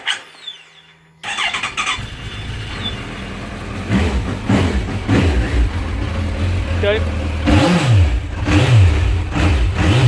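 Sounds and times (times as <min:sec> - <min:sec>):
electric starter cranking: 0:01.2 - 0:02.6
motorcycle engine running: 0:01.3 - 0:10.0.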